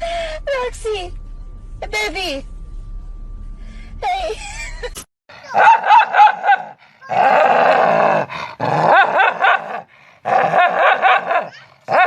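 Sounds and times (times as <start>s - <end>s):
dog yelping: 5.4s - 7.5s.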